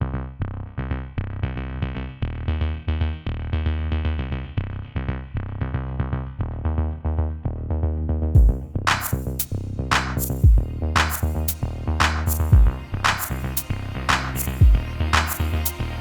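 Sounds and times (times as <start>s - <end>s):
heavy bass line: 0.0s - 16.0s
drum-machine beat: 8.4s - 15.8s
synthesizer chords: 8.4s - 16.0s.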